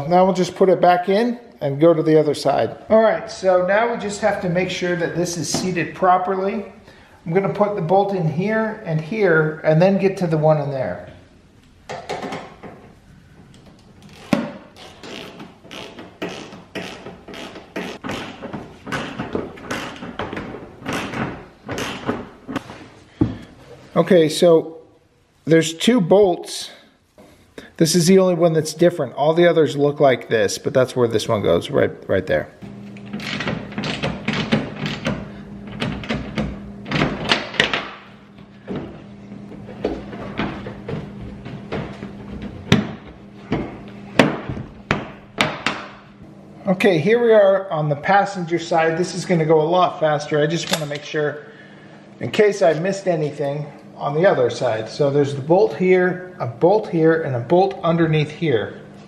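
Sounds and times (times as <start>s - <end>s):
tools knocking and clattering: 11.9s - 12.9s.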